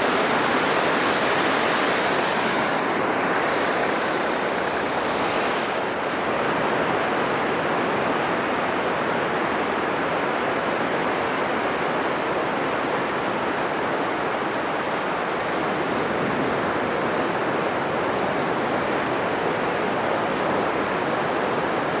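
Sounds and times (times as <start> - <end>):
surf breaking on beach: 0.0 - 9.1.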